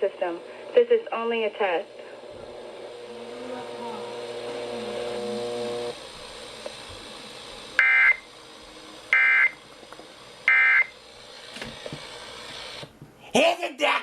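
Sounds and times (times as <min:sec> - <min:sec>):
two-tone digital data bursts: 0:07.8 - 0:08.3, 0:09.1 - 0:09.6, 0:10.5 - 0:10.9.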